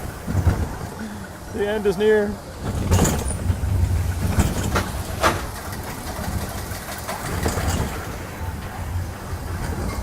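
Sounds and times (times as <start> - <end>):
roller coaster low rumble: 0.0 - 10.0
clacks and rattles: 2.6 - 8.8, 9.4 - 10.0.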